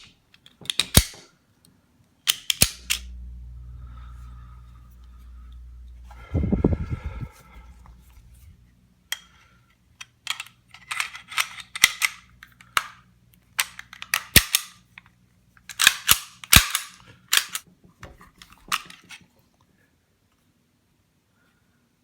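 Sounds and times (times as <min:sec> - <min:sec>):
metallic clicks of pistol parts: 0:00.0 - 0:01.3, 0:02.2 - 0:03.1, 0:10.0 - 0:13.0, 0:13.6 - 0:17.7.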